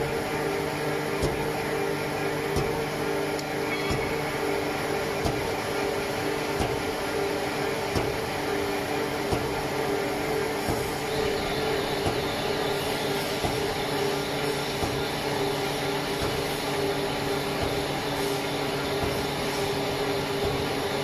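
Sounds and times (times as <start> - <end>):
industrial machine humming: 0.0 - 21.0.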